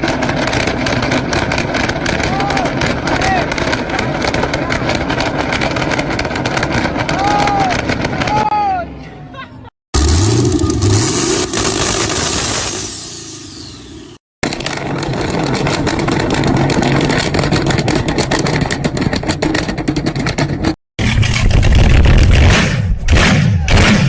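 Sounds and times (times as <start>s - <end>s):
exhaust crackling: 0.0s - 8.5s, 10.0s - 19.8s
car engine revving: 10.0s - 14.0s.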